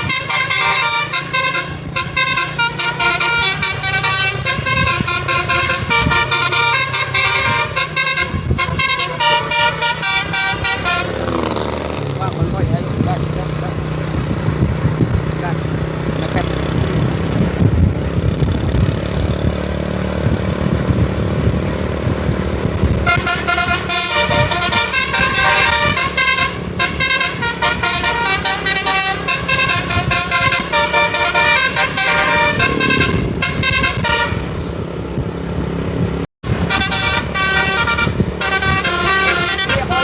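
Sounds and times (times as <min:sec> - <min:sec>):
musical air horn tune: 0:00.0 - 0:11.5, 0:23.0 - 0:34.8, 0:36.5 - 0:40.0
bus engine running: 0:00.0 - 0:40.0.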